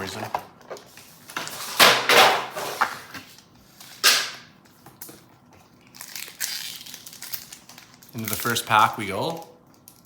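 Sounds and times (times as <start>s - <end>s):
foil packs crinkling: 5.7s - 10.0s.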